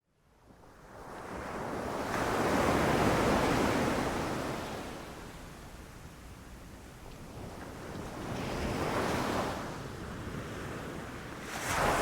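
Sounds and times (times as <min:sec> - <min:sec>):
ocean wave breaking on shore: 0:11.4 - 0:12.0.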